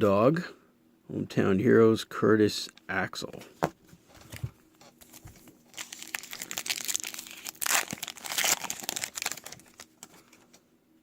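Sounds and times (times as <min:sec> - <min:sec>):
foil wrapper crinkling and tearing: 0:05.0 - 0:10.4.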